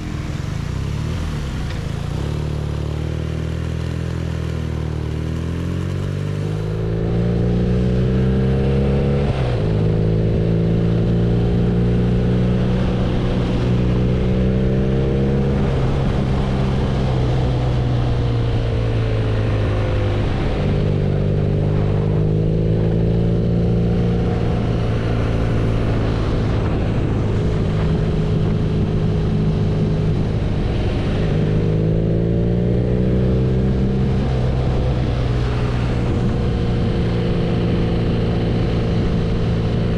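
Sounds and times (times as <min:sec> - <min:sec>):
wind rush: 0:12.2 - 0:39.9.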